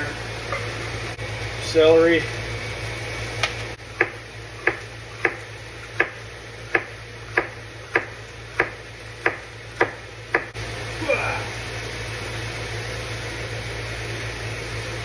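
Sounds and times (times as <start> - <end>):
knife chopping on cutting board: 4.0 - 10.5.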